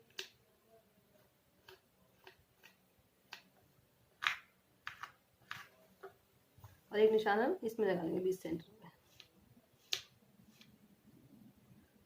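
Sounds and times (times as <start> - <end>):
faint clicks and scratches: 1.1 - 3.6, 8.7 - 10.9.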